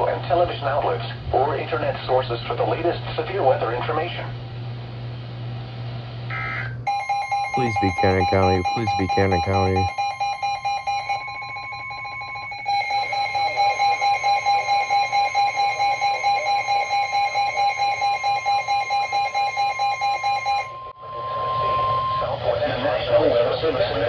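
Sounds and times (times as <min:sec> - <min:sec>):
steady high alert tone: 0:06.9 - 0:19.4
rapid alarm beeps: 0:06.9 - 0:22.4.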